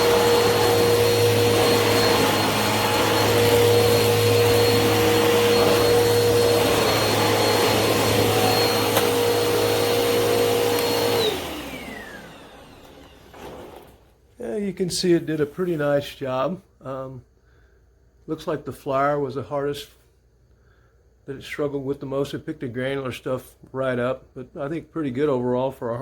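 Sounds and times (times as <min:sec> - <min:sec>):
vacuum cleaner running: 0:00.0 - 0:14.2.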